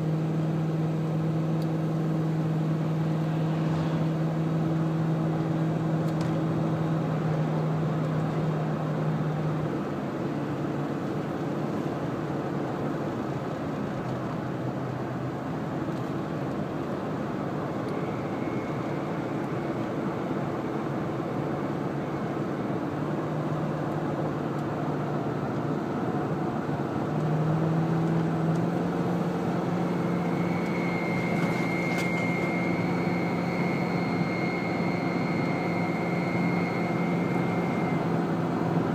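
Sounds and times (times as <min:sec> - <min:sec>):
car engine running: 0:00.0 - 0:38.9
high whine: 0:17.2 - 0:23.6, 0:28.2 - 0:38.9
harmonic hum: 0:29.0 - 0:38.0.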